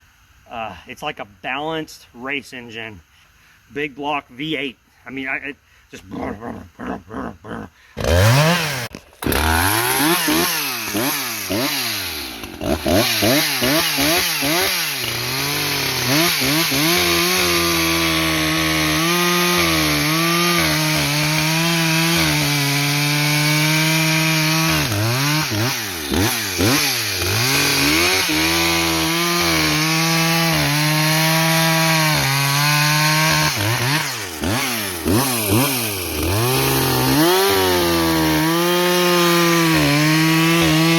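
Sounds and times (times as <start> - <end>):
chainsaw revving: 7.4 - 40.9
chainsaw cutting firewood: 8.0 - 40.9.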